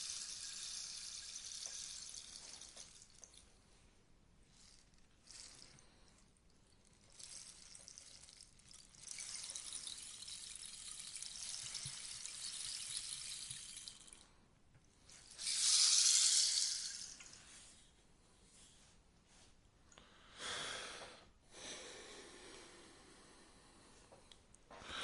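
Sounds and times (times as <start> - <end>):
rainstick pattering hiss: 0.0 - 3.5, 6.9 - 14.2, 15.1 - 17.6.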